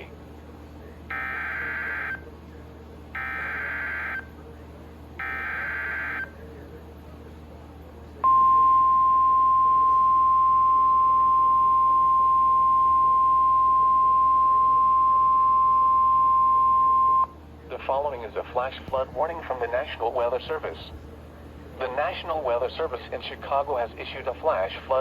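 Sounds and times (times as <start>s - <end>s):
steady attention tone: 3.2s - 4.3s, 8.2s - 17.4s.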